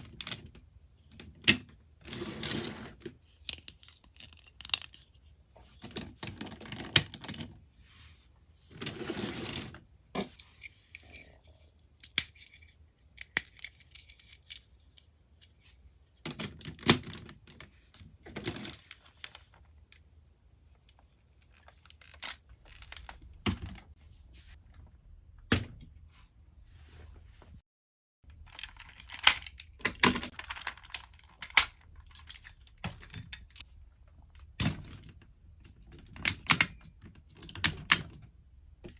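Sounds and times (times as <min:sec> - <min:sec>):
plastic toy parts clicking: 0:03.5 - 0:05.1, 0:13.2 - 0:14.6, 0:28.3 - 0:33.6.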